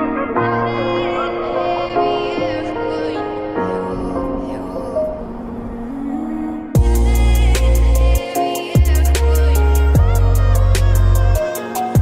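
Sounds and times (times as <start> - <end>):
sustained chords: 0.0 - 12.0.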